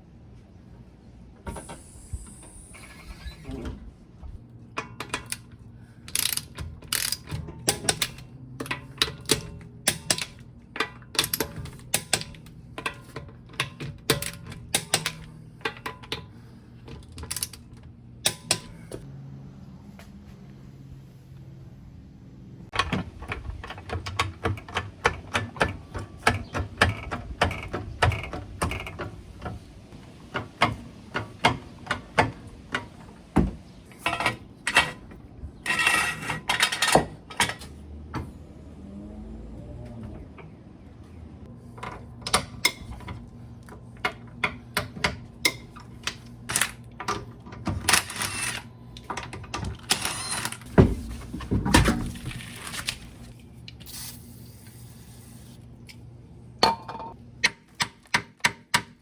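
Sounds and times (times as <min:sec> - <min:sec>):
hand ratchet clicking: 0:06.1 - 0:08.2
rattling handling noises: 0:41.7 - 0:53.8.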